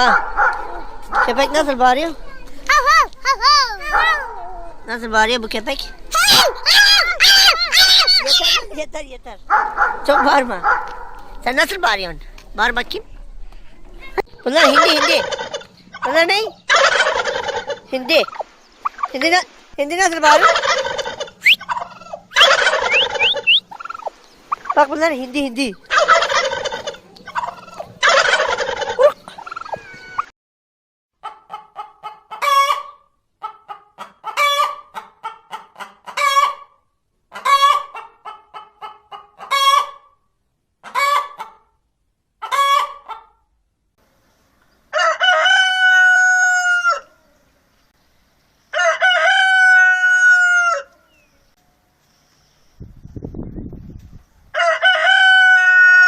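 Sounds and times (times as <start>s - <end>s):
hens clucking: 5.8s - 8.8s, 14.2s - 30.3s, 31.2s - 40.1s, 40.8s - 41.7s, 42.4s - 43.4s
turkeys gobbling: 6.2s - 8.7s, 14.5s - 19.3s, 20.2s - 30.3s, 31.2s - 40.1s, 40.8s - 41.7s, 42.4s - 43.4s, 45.0s - 47.2s, 48.8s - 50.9s
rooster crowing: 44.9s - 47.2s, 48.7s - 51.0s, 54.5s - 56.0s.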